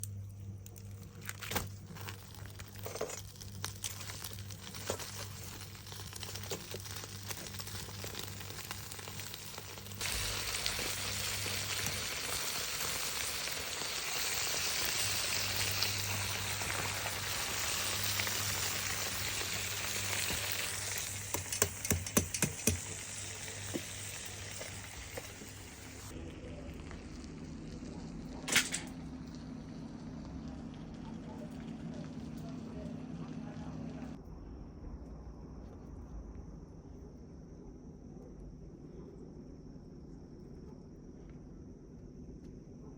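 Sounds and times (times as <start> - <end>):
oil popping: 1.1 - 26.2
food sizzling in a pan: 1.8 - 26.2
low hum: 22.8 - 42.9.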